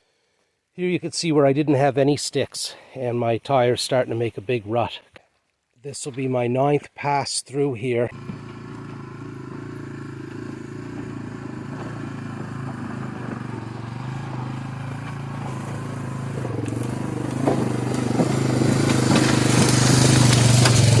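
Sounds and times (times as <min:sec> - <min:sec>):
three-wheeler engine running: 0:08.1 - 0:21.0
sticks snapping under tires: 0:16.6 - 0:21.0.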